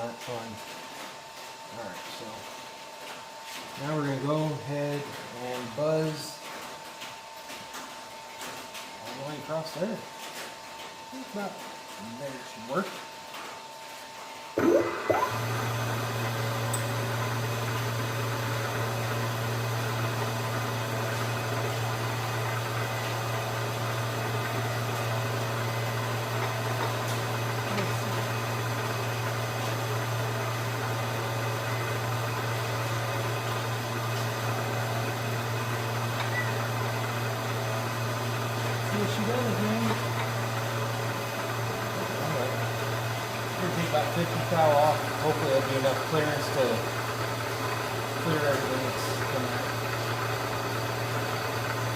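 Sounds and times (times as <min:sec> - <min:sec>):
milling machine motor hum: 0:14.3 - 0:51.9.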